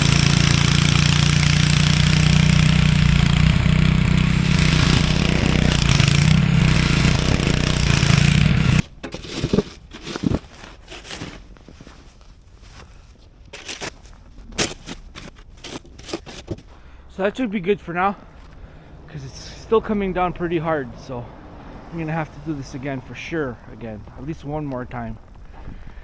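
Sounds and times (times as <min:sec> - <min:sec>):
snowblower engine running: 0:00.0 - 0:11.4, 0:14.7 - 0:23.9.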